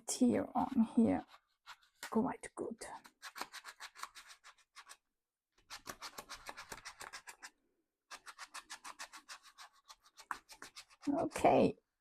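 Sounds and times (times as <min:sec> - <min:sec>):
rubbing on paper: 0:00.6 - 0:02.2, 0:03.0 - 0:05.0, 0:05.6 - 0:07.5, 0:08.1 - 0:11.4.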